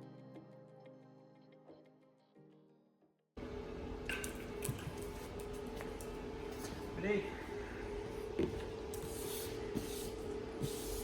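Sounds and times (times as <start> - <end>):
steady background hum: 3.4 - 11.0.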